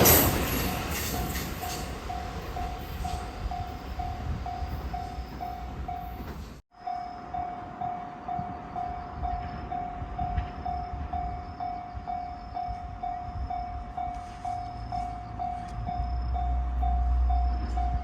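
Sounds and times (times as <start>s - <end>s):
low rumble of train: 0.0s - 18.0s.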